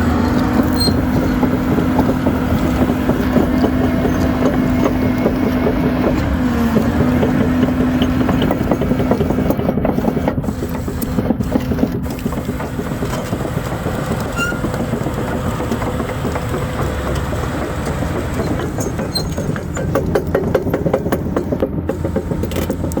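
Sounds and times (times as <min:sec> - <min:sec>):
excavator diesel engine running: 0:00.0 - 0:23.0
clicks and rattles: 0:00.3 - 0:23.0.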